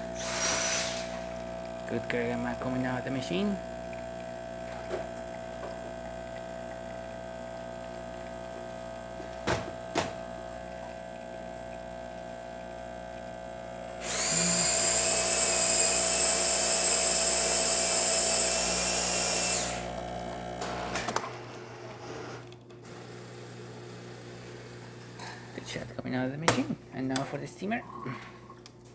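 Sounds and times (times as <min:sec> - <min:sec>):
espresso machine pump humming: 0:00.0 - 0:28.9
loud high whirring: 0:14.0 - 0:20.0.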